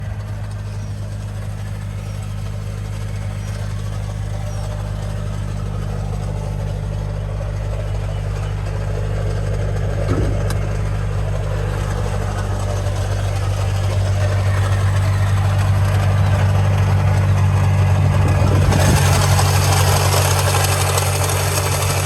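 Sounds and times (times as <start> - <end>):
car engine idling with rattle: 0.0 - 22.0
short knock: 10.0 - 10.8.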